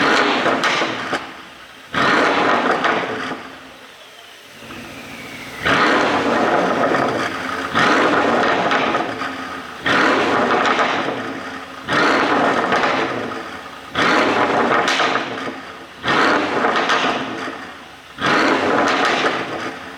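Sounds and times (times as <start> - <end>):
car engine revving: 0.0 - 19.9
exhaust crackles and pops: 0.0 - 19.9.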